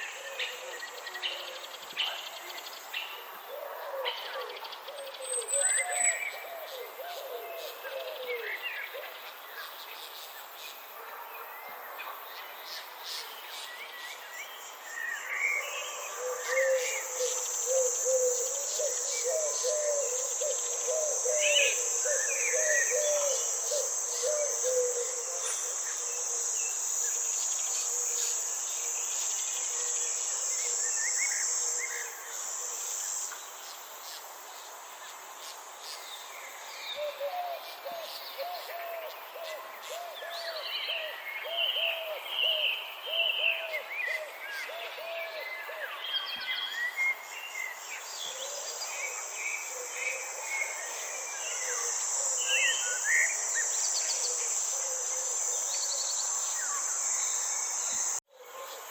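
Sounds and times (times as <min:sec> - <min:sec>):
insect trilling buzz: 0:16.1 - 0:34.6.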